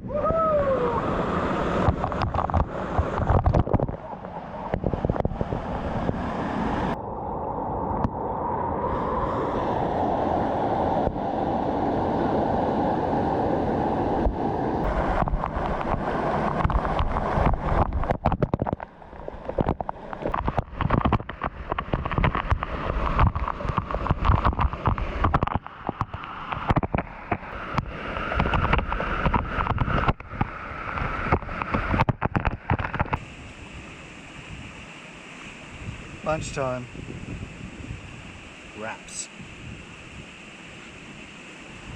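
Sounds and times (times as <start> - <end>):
creek water rushing: 0.2 - 41.9
wind and handling bumps on microphone: 1.6 - 7.0, 14.2 - 33.4.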